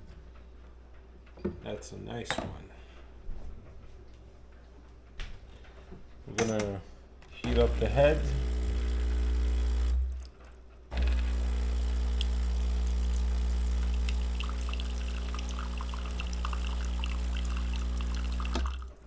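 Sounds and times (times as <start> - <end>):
espresso machine pump humming: 7.4 - 10.3, 10.9 - 19.0
water pouring and splashing: 13.1 - 19.0.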